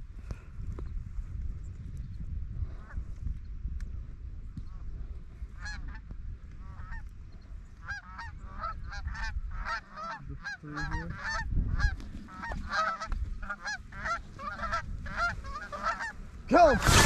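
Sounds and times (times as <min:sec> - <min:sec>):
wind rumbling on microphone: 0:00.0 - 0:17.0
geese honking: 0:07.8 - 0:16.2.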